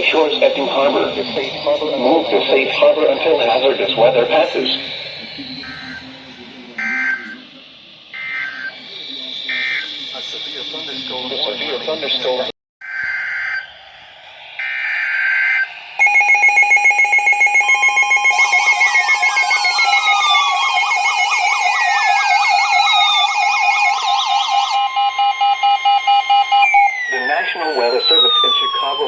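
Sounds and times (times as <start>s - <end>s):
fast pulsing beep: 0.0s - 13.8s, 14.6s - 29.0s
falling tone sweeps: 0.0s - 29.0s
squawking data tones: 0.0s - 29.0s
steady attention tone: 0.0s - 29.0s
warbling siren-like alarm: 0.0s - 29.0s.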